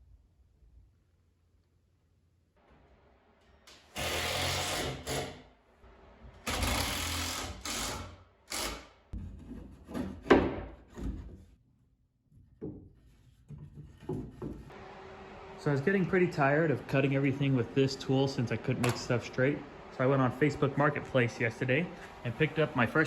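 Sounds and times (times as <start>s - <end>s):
power saw cutting: 3.7s - 5.4s, 6.4s - 8.9s, 14.7s - 23.0s.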